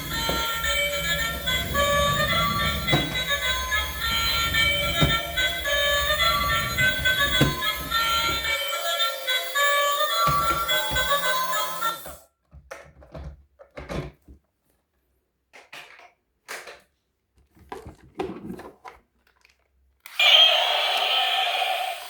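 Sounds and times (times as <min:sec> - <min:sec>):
background music: 0:00.0 - 0:12.2.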